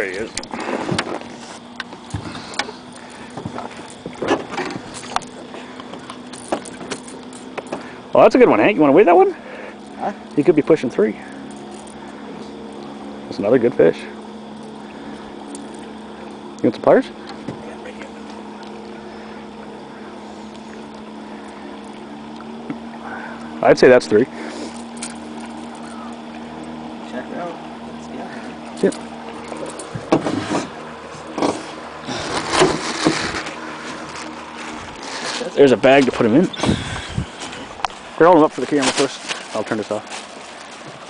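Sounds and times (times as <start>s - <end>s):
faint steady hum: 0.0s - 41.0s
faint water: 0.0s - 41.0s
knocks and taps in a boat: 0.3s - 1.2s, 3.3s - 7.8s, 17.2s - 18.4s, 29.5s - 31.6s
wind noise: 36.5s - 37.8s.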